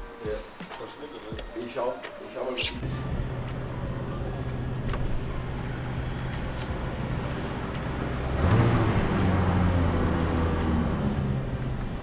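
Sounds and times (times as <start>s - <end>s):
car engine humming: 2.8s - 12.0s
engine starting and idling: 2.8s - 12.0s.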